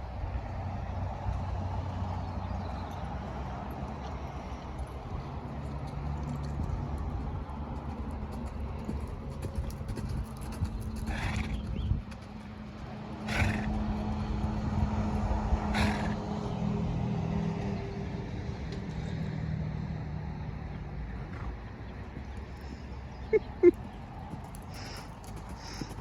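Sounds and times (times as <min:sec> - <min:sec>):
horse blowing: 0:13.3 - 0:13.8, 0:15.8 - 0:16.2, 0:24.6 - 0:26.0.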